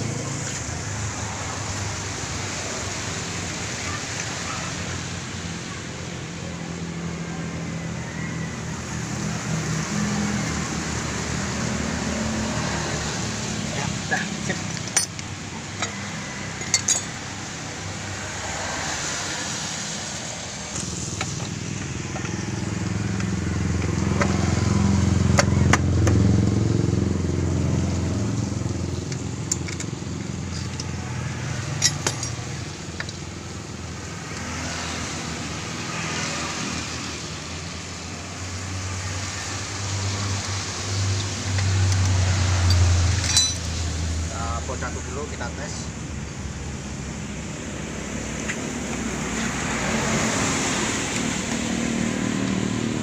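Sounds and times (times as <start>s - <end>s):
sharp metallic clinks: 14.8s - 15.2s, 16.6s - 17.2s, 31.6s - 33.1s, 42.6s - 43.8s
vehicle engine running: 20.0s - 53.0s.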